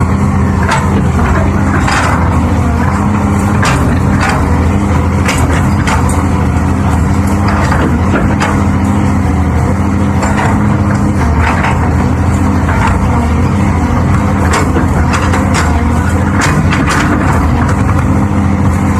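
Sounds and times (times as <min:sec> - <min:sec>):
diesel engine running: 0:00.0 - 0:18.9
metallic clanks and knocks: 0:00.1 - 0:18.9.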